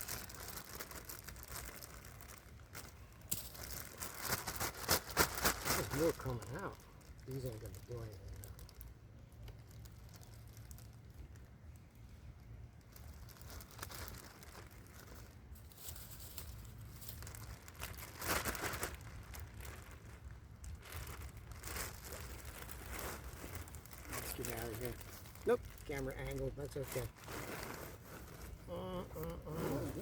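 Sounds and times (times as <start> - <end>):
rustling and crinkling: 0.0 - 30.0.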